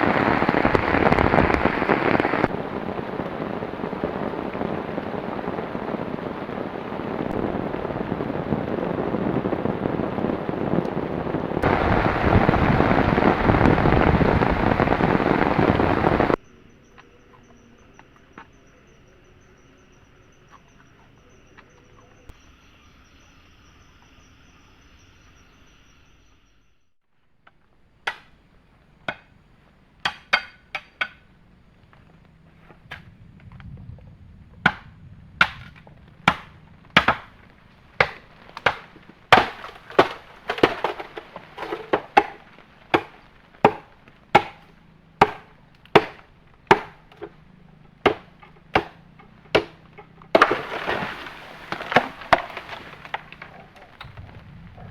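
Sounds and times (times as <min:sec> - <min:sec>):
forest insects chirring: 0:00.0 - 0:54.9
blade chopping wood: 0:35.4 - 0:37.3, 0:38.0 - 0:47.3, 0:48.0 - 0:53.5.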